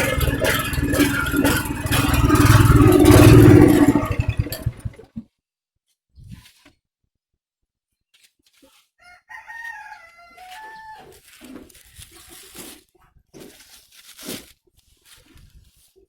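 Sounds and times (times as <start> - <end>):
irregular noise bursts: 0.0 - 5.0
rooster crowing: 9.0 - 11.2.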